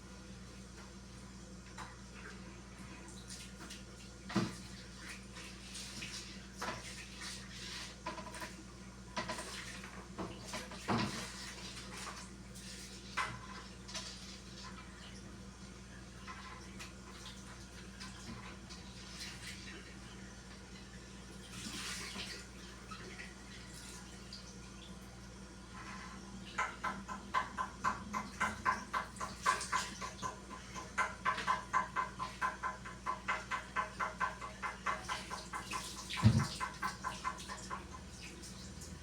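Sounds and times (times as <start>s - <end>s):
dull thump: 36.2s - 36.5s.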